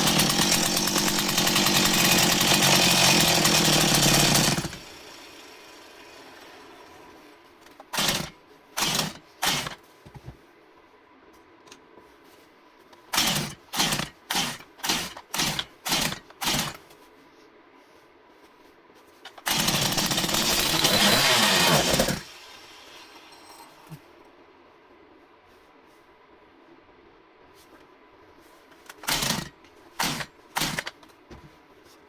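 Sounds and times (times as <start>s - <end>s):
chainsaw engine running loudly: 0.0s - 4.8s, 19.5s - 22.2s.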